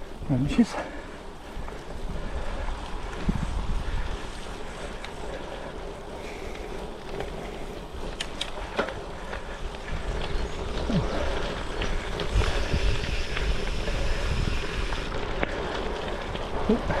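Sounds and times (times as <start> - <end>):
bike tyres rolling on gravel: 0.0 - 17.0
wind on microphone: 1.4 - 5.4, 9.6 - 17.0.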